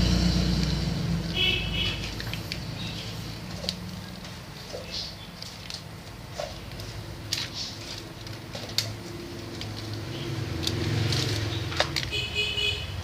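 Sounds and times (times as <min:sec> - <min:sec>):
low steady rumble: 0:00.0 - 0:04.7.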